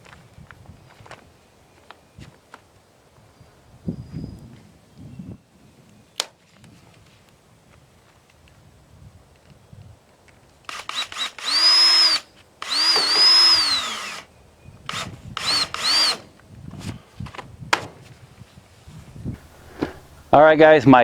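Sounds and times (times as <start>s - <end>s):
cordless drill bursts: 10.7s - 14.3s, 14.9s - 16.4s, 19.4s - 20.4s.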